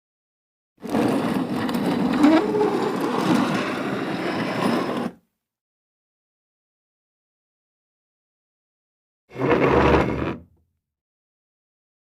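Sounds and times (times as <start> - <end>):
heavy object scraping across floor: 0.8 - 5.2, 9.3 - 10.5.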